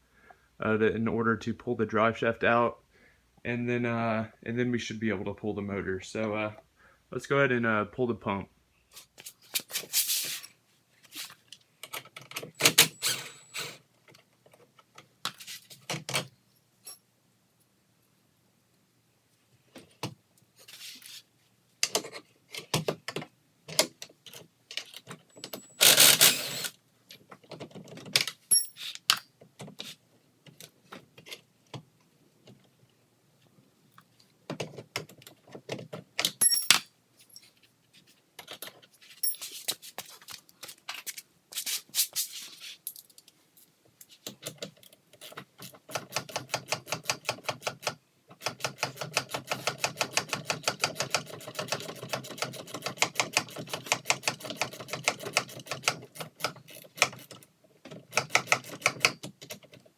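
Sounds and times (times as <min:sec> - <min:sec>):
metal tool clinks and knocks: 0:16.8 - 0:17.0, 0:28.5 - 0:28.9, 0:36.4 - 0:37.6, 0:39.2 - 0:39.6
ratchet clicking: 0:25.5 - 0:26.7.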